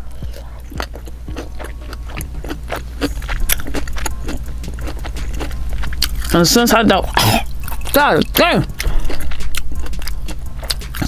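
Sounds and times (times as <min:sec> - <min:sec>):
steady low hum: 0:00.0 - 0:07.9
wet chewing with mouth clicks: 0:00.0 - 0:11.0
lip smacks: 0:07.0 - 0:11.0.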